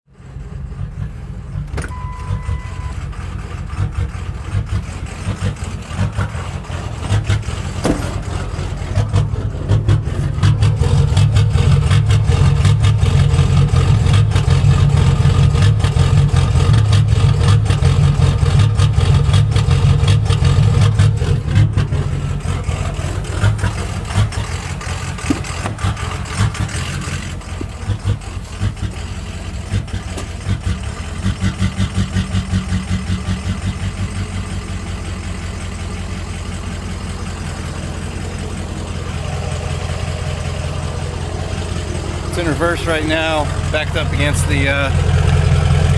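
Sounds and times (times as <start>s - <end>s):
diesel engine idling roughly: 0.1s - 45.9s.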